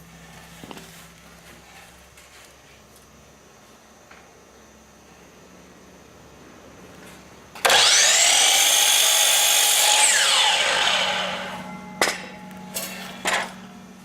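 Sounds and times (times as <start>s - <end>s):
miter saw motor whine: 7.6s - 14.0s.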